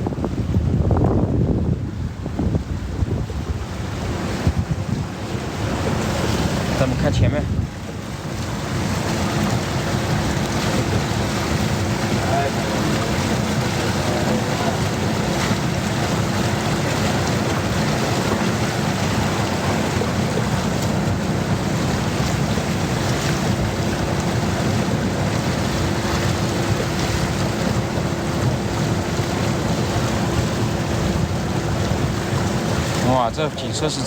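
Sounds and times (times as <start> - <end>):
outboard motor humming: 0.0 - 34.0
water wash: 0.0 - 34.0
wind noise: 0.0 - 34.0.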